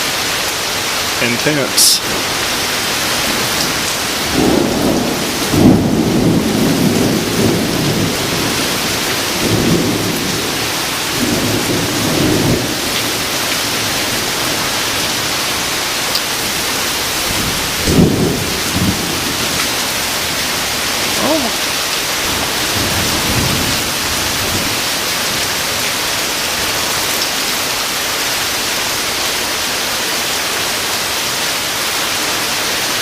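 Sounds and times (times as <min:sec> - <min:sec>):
heavy rain pouring: 0:00.0 - 0:33.0
thunder rumbling: 0:03.2 - 0:12.8.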